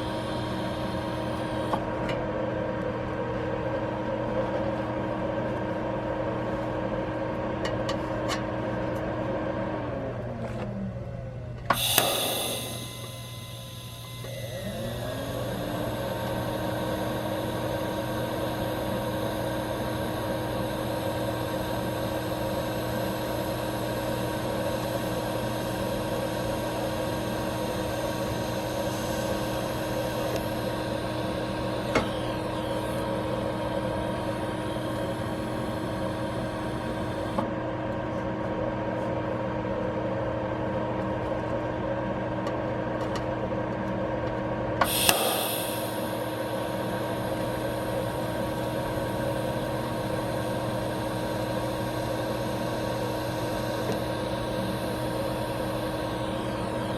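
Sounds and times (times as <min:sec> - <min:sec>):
small motor starting up: 0:00.0 - 0:01.9, 0:11.7 - 0:37.4, 0:44.8 - 0:56.9.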